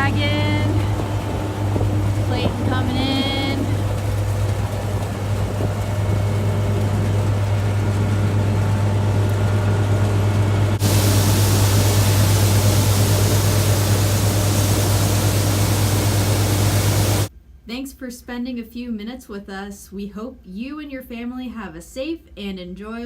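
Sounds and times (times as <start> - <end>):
combine harvester engine drone: 0.0 - 17.3
hiss of noise: 10.8 - 17.3.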